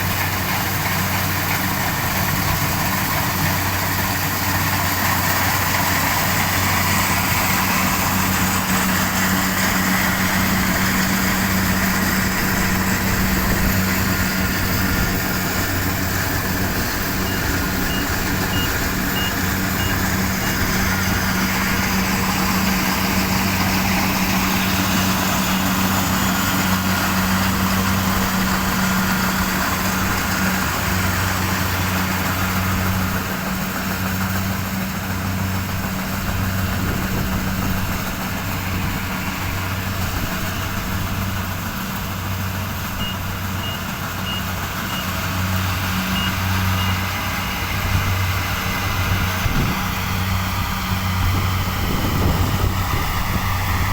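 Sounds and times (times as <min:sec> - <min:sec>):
engine running steadily: 0:00.0 - 0:53.9
faint high beeps: 0:17.2 - 0:20.6.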